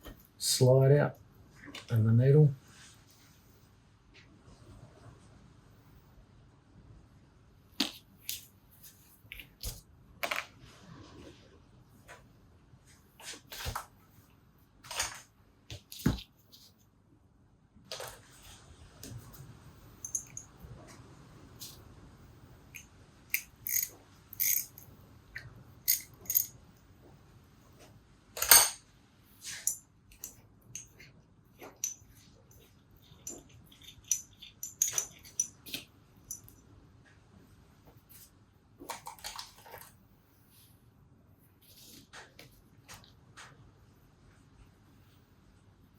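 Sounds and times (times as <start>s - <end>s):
small metal parts clinking: 20.0s - 20.6s, 23.3s - 24.9s, 25.9s - 26.6s, 31.8s - 35.7s.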